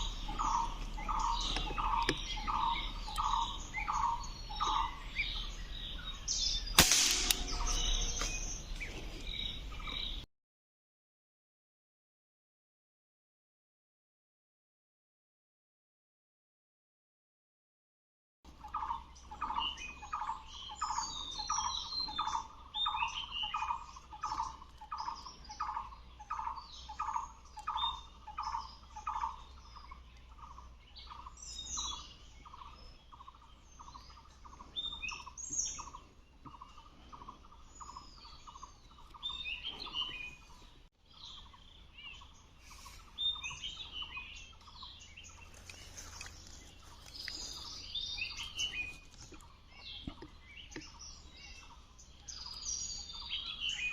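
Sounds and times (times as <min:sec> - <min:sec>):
birds chirping and twittering: 0:00.0 - 0:10.3, 0:18.5 - 0:53.9
bird repeated note: 0:06.8 - 0:08.8.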